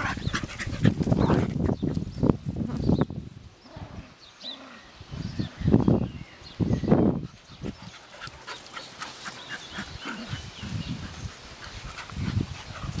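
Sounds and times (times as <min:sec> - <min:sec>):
dog panting: 0:00.0 - 0:01.6, 0:07.4 - 0:13.0.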